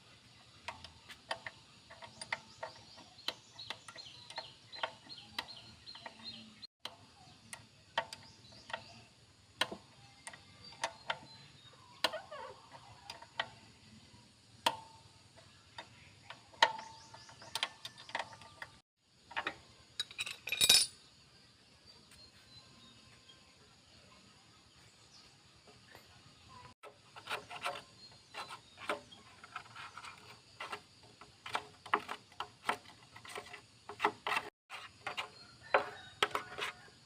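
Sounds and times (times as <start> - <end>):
metal tools clicking and clinking: 19.3 - 21.0
metal clatter: 19.4 - 21.0.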